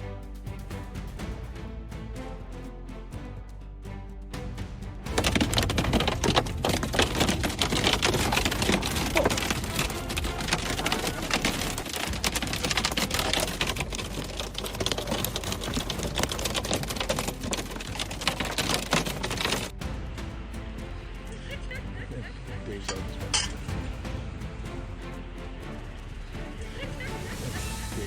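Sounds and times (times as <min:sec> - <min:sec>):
hail and rain clattering: 0:05.1 - 0:19.8.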